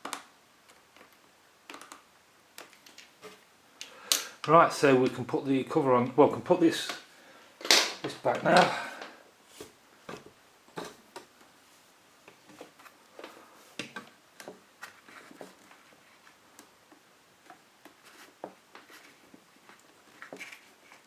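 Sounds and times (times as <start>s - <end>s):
plastic parts clicking: 0.0s - 3.1s.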